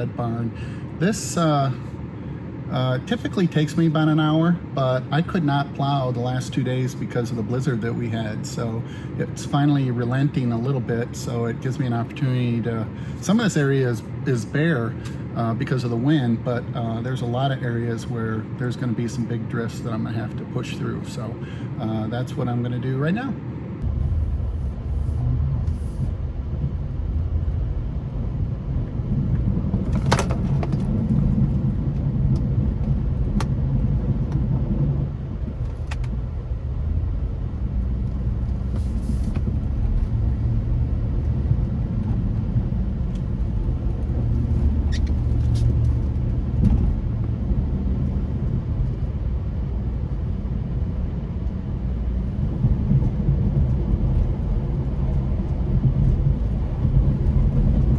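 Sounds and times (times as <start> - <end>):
engine running under load: 23.8 - 57.9.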